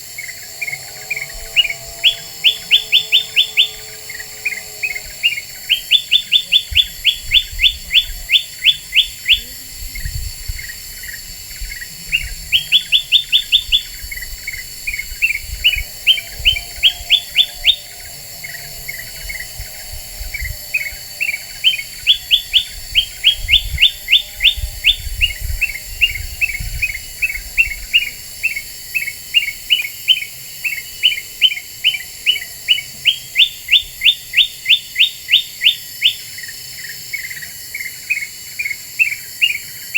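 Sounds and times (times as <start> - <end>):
bulbul singing whistled notes: 1.5 - 3.9, 4.9 - 10.2, 12.1 - 14.6, 15.2 - 17.9, 21.2 - 36.2.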